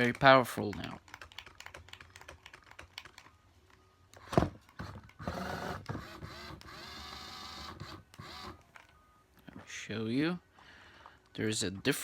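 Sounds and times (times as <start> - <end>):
toy car motor whirring: 5.2 - 8.6.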